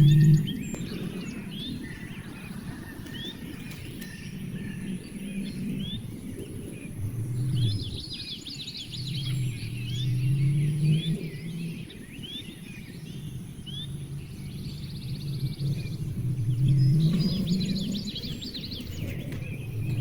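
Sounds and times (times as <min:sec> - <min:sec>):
low hum: 0:00.0 - 0:03.2
small birds chirping: 0:00.0 - 0:20.0.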